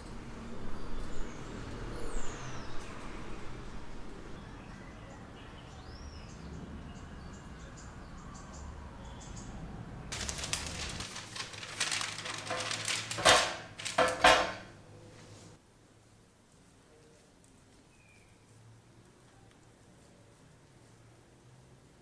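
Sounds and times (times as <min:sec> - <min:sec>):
rustling and clattering: 0:10.1 - 0:15.6.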